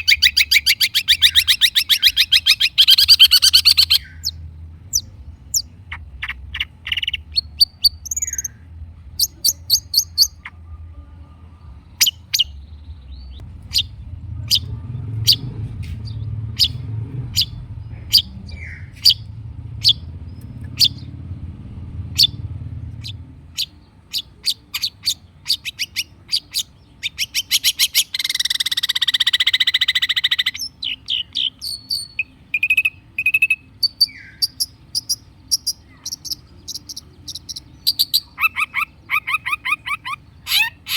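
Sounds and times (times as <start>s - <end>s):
bird singing sharp chips: 0.0s - 8.6s, 9.2s - 10.4s, 12.0s - 21.1s, 23.0s - 40.9s
low hum: 2.0s - 27.1s.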